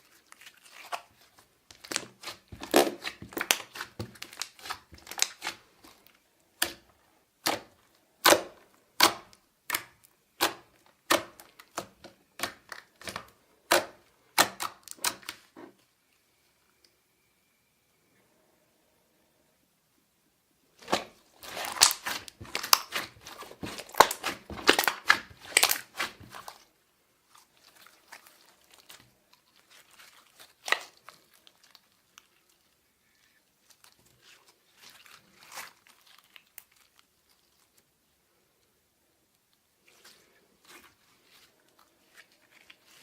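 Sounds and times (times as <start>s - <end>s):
slime squished by hand: 0.0s - 15.5s, 20.8s - 26.6s, 27.2s - 32.8s.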